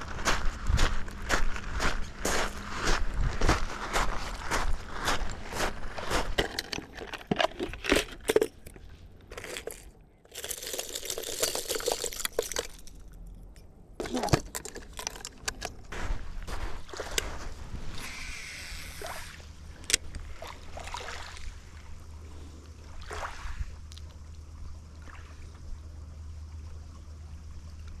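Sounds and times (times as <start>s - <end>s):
footsteps crunching on gravel: 0.0s - 13.2s, 14.0s - 17.8s.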